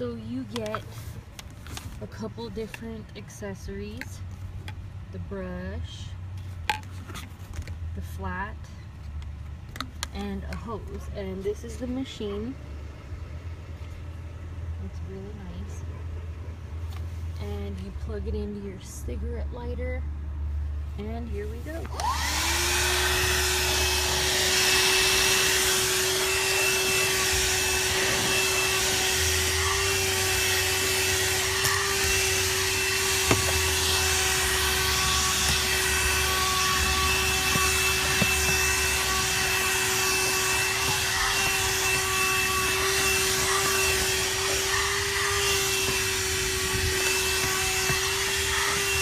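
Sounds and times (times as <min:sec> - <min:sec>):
handheld vacuum cleaner running: 0:21.9 - 0:49.0.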